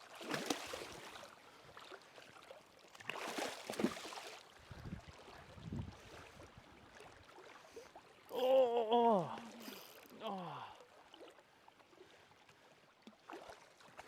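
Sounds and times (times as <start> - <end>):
water splashing: 0.0 - 1.3, 3.0 - 4.4
running creek: 0.0 - 14.0.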